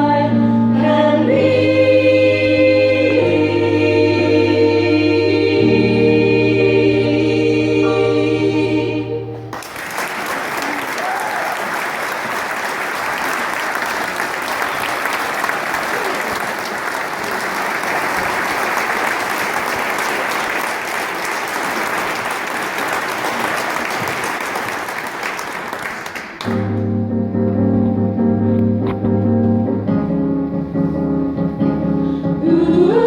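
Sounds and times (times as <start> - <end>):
sustained instrumental chords: 0.0 - 9.6, 26.5 - 33.0
audience applauding: 9.5 - 26.7.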